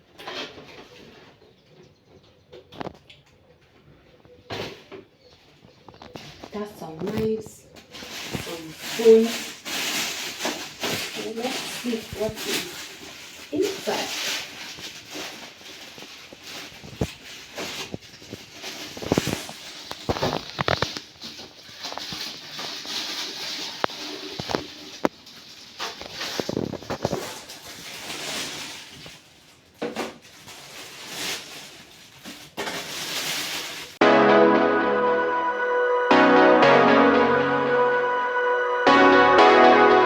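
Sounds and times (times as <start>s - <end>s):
packaging rustling and crinkling: 4.4s - 34.0s.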